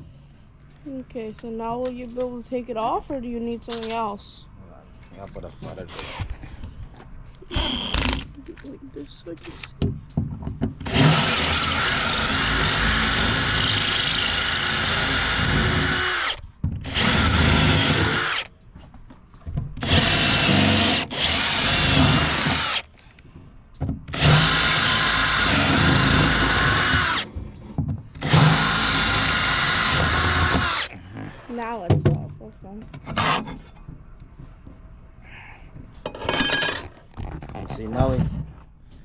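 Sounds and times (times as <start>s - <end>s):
power drill whining: 5.9s - 6.3s, 7.4s - 8.3s, 10.8s - 18.5s, 19.8s - 23.0s, 24.1s - 27.3s, 28.2s - 30.9s.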